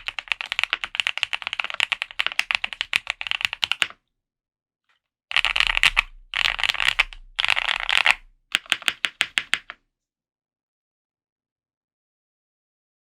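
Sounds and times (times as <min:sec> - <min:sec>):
mechanical keyboard typing: 0:00.0 - 0:04.0, 0:05.3 - 0:09.8.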